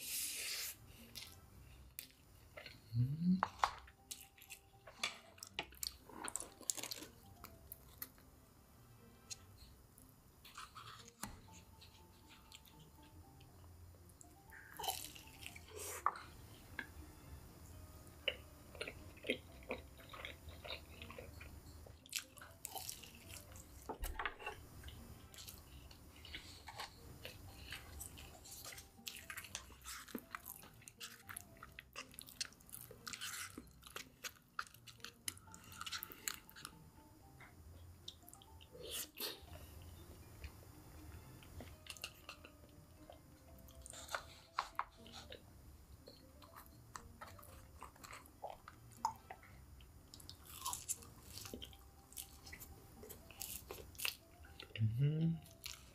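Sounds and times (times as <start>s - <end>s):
chewing crunchy fried chicken: 2.0s - 8.2s, 14.8s - 16.9s, 18.2s - 36.8s, 41.6s - 45.4s, 46.0s - 55.9s
wet mouth sounds: 2.9s - 3.6s.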